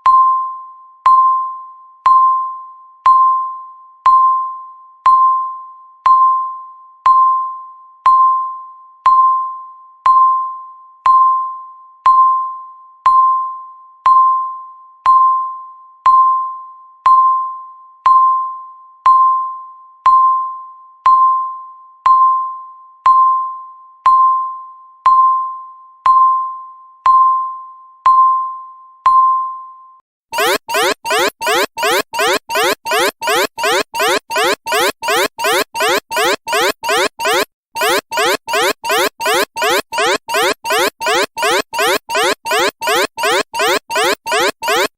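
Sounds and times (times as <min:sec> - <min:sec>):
alarm with rising sweeps: 0:30.4 - 0:44.9
countdown timer beeping: 0:30.4 - 0:44.9.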